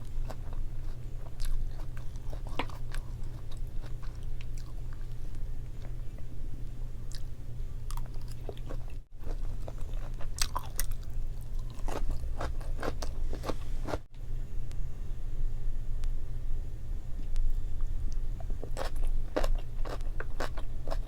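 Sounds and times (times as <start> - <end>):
close chewing and crunching: 0.0 - 6.4, 7.0 - 14.1, 18.4 - 21.0
steady low hum: 0.0 - 21.0.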